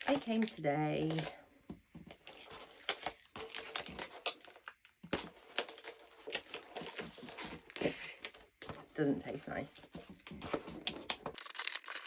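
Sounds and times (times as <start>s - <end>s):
packaging crinkling and rustling: 2.1s - 8.7s, 9.9s - 12.0s.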